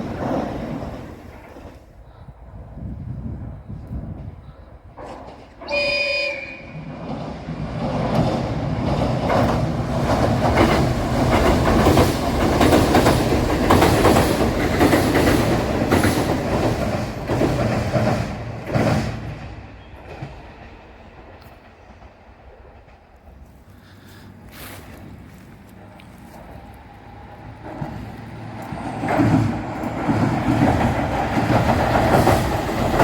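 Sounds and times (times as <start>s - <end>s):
train wheels clattering over rail joints: 4.8s - 5.8s, 6.8s - 33.0s
train horn blast: 5.7s - 6.9s.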